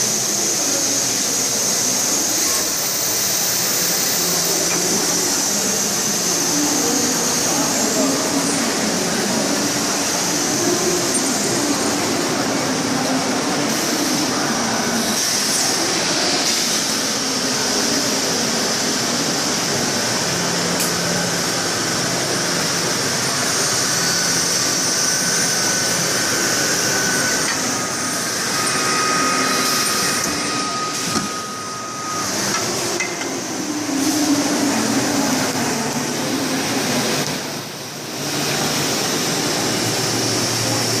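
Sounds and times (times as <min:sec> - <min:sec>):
lathe machine noise: 0:00.0 - 0:41.0
brief whining tones: 0:26.9 - 0:32.8.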